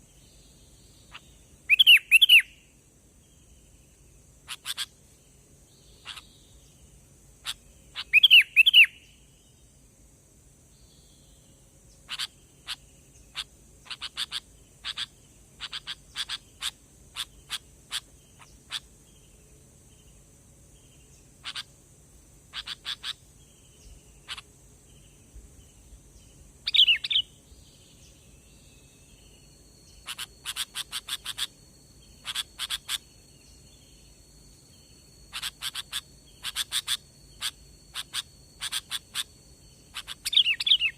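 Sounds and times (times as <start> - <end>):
loud bubbly bird phrases: 1.7 - 2.5, 7.4 - 9.0, 35.3 - 39.3.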